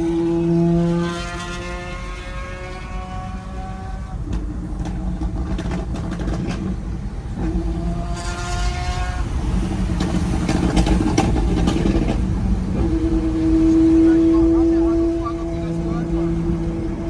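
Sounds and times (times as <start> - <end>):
car engine revving: 0.0 - 17.0
exhaust cracks: 3.4 - 17.0.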